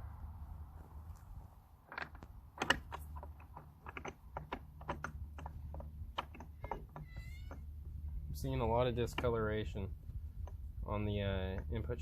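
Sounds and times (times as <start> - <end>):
low steady hum: 0.0 - 12.0
metal parts and tools clinking: 1.8 - 9.4.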